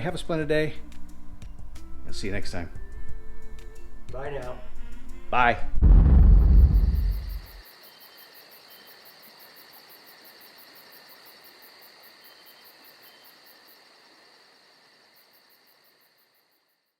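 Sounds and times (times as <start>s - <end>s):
steady high buzz: 5.8s - 7.6s
faint insects chirping: 6.2s - 16.9s.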